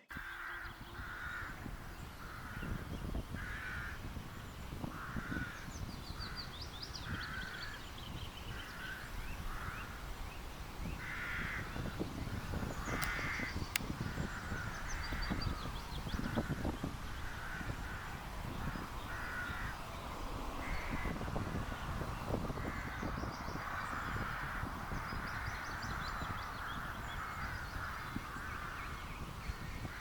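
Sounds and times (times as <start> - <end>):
wind rumble on microphone: 0.0 - 30.0.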